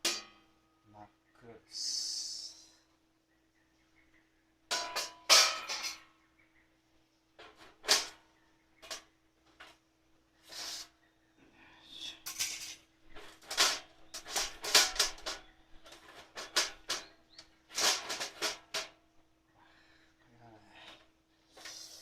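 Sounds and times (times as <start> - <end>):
scraping and knocking on steel stove: 4.7 - 6.0, 12.4 - 19.0.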